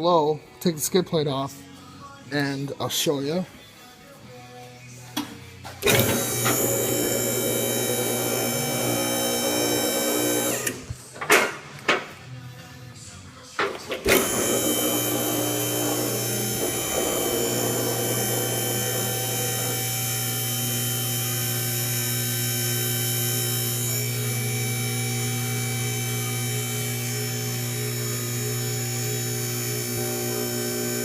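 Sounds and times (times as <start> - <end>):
machine hum with high whine: 5.8 - 11.0, 14.0 - 31.0.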